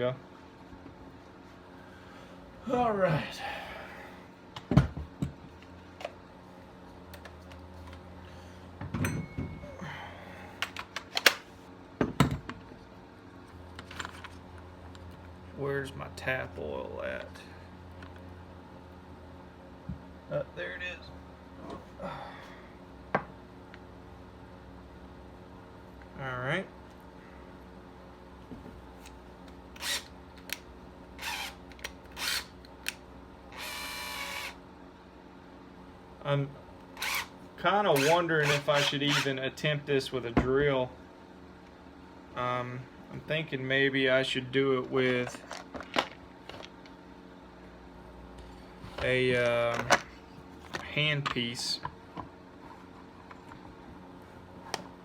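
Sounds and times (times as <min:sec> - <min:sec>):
faint steady hum: 0:00.0 - 0:55.0.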